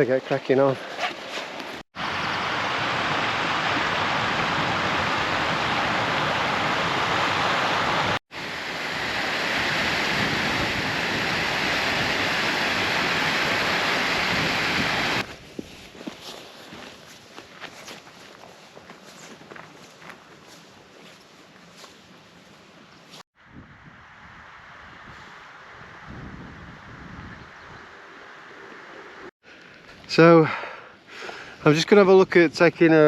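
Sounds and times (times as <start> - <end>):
rush of running water: 2.0 - 15.3
faint footsteps: 15.2 - 23.2.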